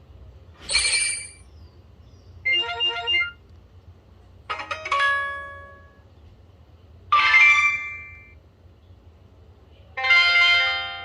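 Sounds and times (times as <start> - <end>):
phone alert chimes: 2.5 - 3.4.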